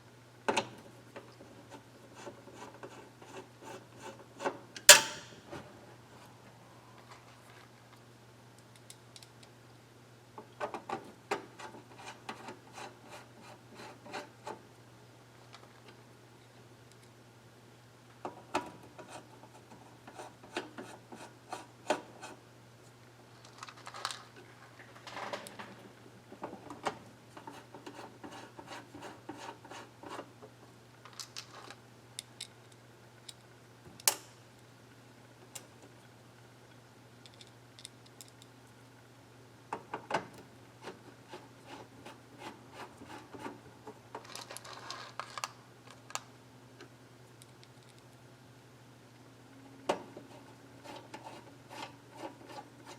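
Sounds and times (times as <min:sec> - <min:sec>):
tools clicking and tapping: 0:04.8 - 0:05.4.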